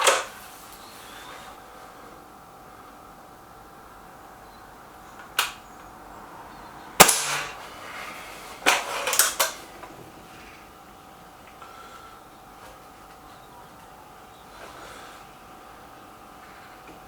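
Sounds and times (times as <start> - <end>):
pellets knocking targets: 7.0 - 7.6
air rifle shots: 7.0 - 7.7.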